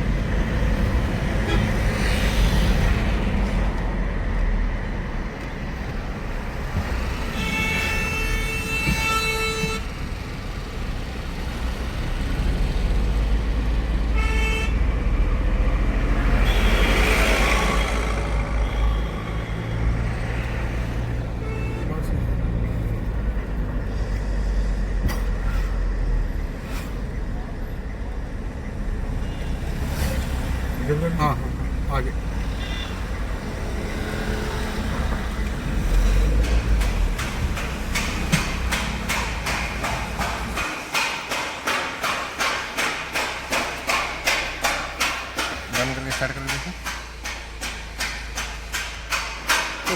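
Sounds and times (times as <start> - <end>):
engine and road rumble: 0.0 - 49.9
car horn: 1.4 - 2.0, 7.2 - 10.1, 14.1 - 14.9, 16.3 - 20.5, 21.2 - 22.4, 32.5 - 35.2.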